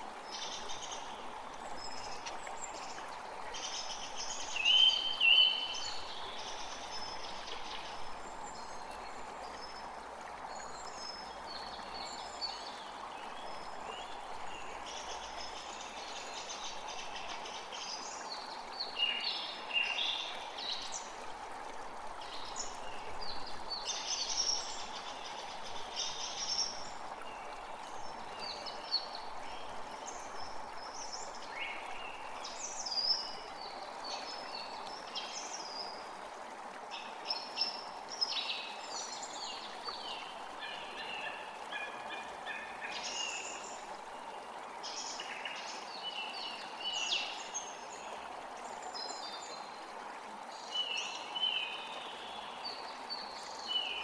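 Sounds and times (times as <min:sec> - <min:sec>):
stream running: 0:00.0 - 0:54.0.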